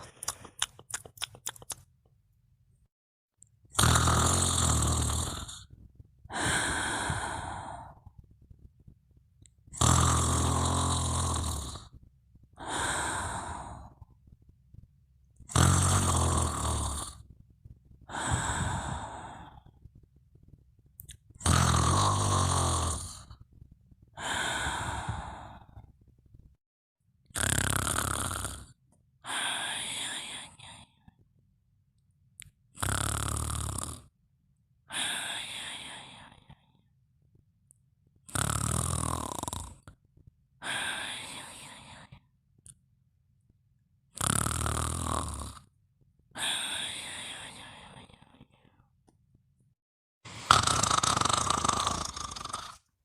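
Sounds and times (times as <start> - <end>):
person snoring: 3.7 - 5.7, 6.3 - 8.2, 9.7 - 12.0, 12.6 - 14.1, 15.4 - 17.2, 18.1 - 19.8, 21.0 - 23.4, 24.2 - 25.9, 27.3 - 31.1, 32.8 - 34.1, 34.9 - 36.8, 38.3 - 39.9, 40.6 - 42.2, 44.1 - 45.7, 46.4 - 48.8, 50.3 - 52.9.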